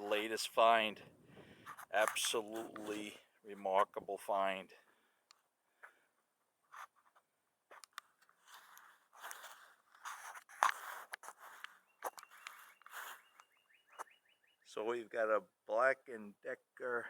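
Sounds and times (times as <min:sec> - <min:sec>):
crunching and scraping: 0:01.6 - 0:03.2, 0:06.7 - 0:14.1
faint high pulsing chirp: 0:11.7 - 0:14.8.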